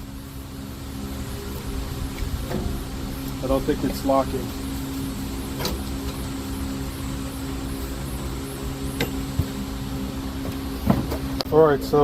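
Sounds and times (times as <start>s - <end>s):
steady mechanical hum: 0.0s - 12.0s.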